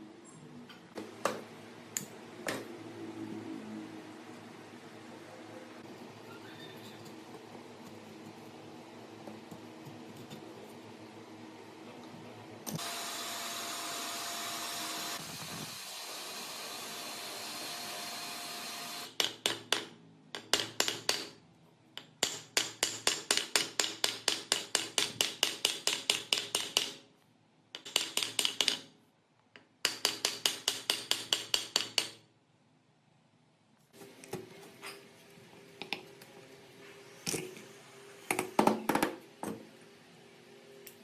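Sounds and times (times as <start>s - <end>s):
power tool running: 12.7s - 19.1s.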